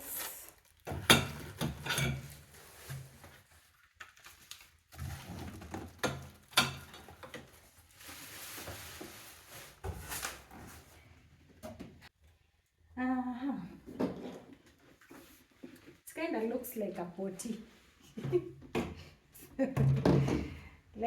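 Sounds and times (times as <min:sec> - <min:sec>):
rustling: 0:07.1 - 0:11.1.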